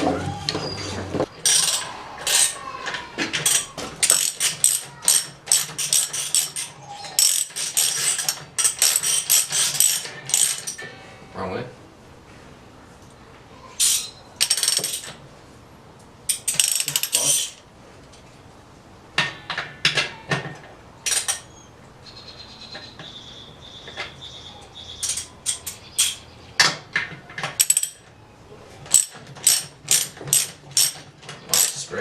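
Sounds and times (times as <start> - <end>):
metal tools clinking: 1.4 - 11.0, 13.8 - 15.2, 16.3 - 18.3, 19.2 - 21.5, 25.0 - 28.1, 28.8 - 32.0.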